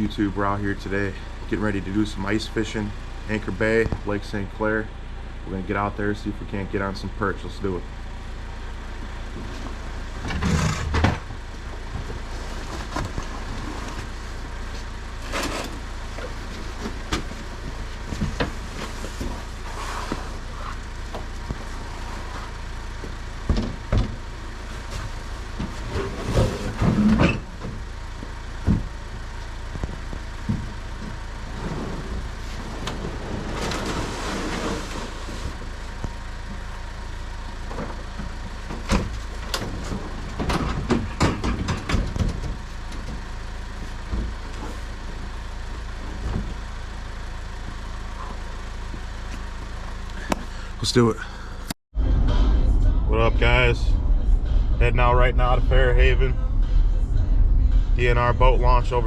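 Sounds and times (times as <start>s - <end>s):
vehicle low drone: 0.0s - 59.0s
knocks and thumps: 23.0s - 24.2s, 37.8s - 43.2s.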